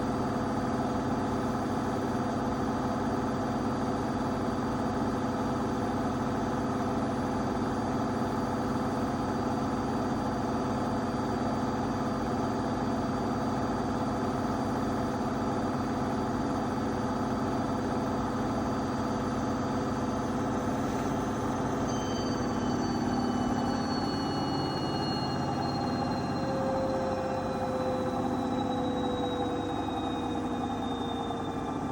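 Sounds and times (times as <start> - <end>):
washing machine humming: 0.0 - 31.9
high whine sliding down: 20.5 - 31.9.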